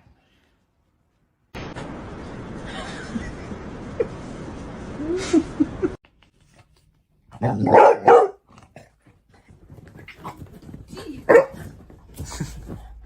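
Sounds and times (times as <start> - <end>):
dog barking: 7.4 - 8.4, 11.3 - 11.7.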